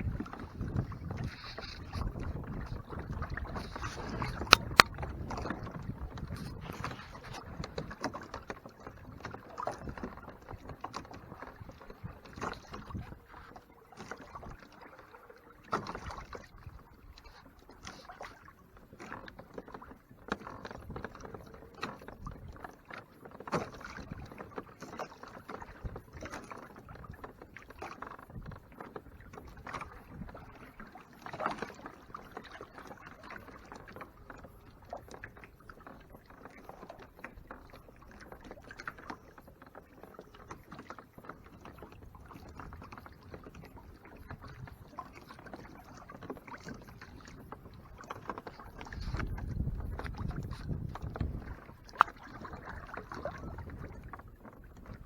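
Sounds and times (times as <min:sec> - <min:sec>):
water lapping against kayak hull: 0:00.0 - 0:55.0.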